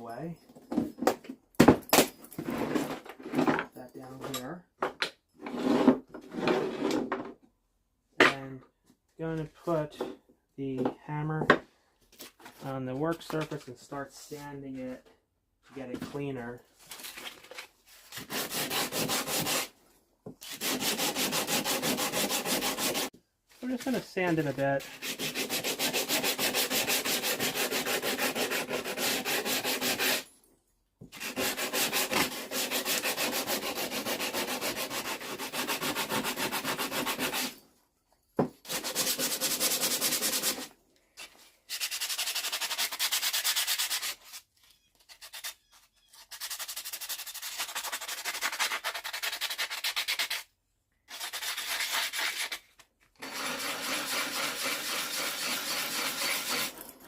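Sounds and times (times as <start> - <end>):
sandpaper rasping on metal: 18.1 - 19.7, 20.4 - 30.3, 31.1 - 37.6, 38.6 - 50.5, 51.1 - 56.8.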